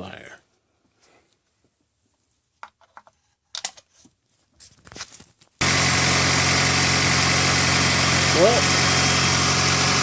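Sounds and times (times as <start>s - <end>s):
car engine idling: 5.6s - 10.0s.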